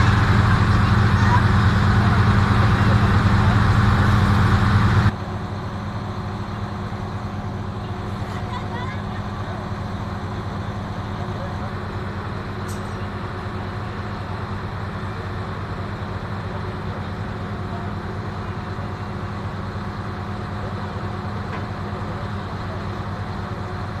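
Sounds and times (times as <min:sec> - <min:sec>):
engine idling: 0:00.0 - 0:24.0.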